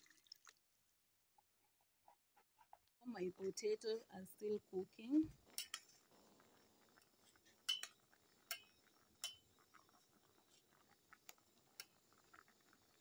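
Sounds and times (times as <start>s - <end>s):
utensil clinking on cooking pot: 5.5s - 6.0s, 7.6s - 9.8s.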